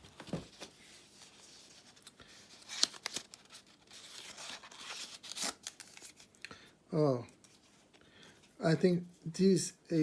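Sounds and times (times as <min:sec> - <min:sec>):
packaging rustling: 0:00.0 - 0:06.4
packaging crinkles and clicks: 0:02.0 - 0:06.5.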